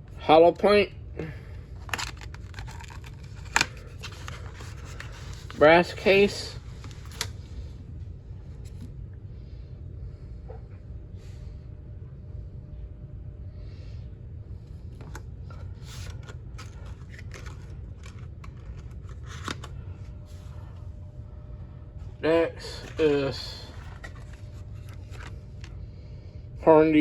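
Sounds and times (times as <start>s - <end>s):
low hum: 0.0s - 26.7s
cardboard box clicks and rustles: 1.8s - 5.5s.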